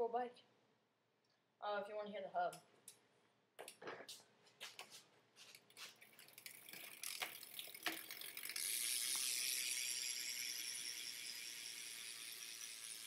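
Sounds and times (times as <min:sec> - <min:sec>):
bike hub ticking: 0:06.0 - 0:13.0.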